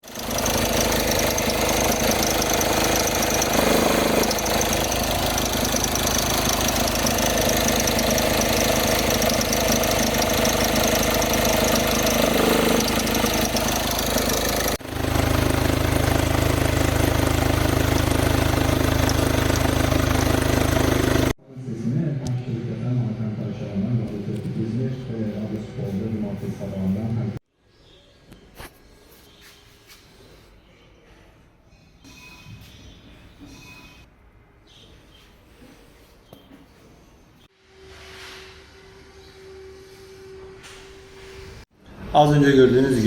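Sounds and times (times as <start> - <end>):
belt drive grinding and knocking: 0.0 - 21.4
car engine running: 0.0 - 21.4.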